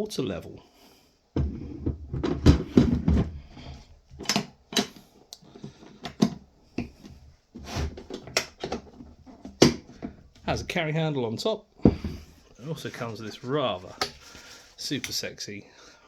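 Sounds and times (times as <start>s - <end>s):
plastic clicks and knocks: 1.4s - 7.2s, 7.8s - 10.6s, 13.9s - 14.3s.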